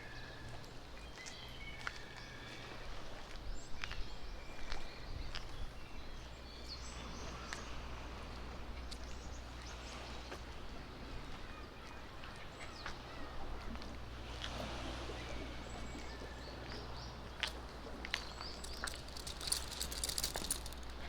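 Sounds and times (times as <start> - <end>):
low outdoor hum: 0.0 - 21.0
sharp clicks: 18.4 - 21.0.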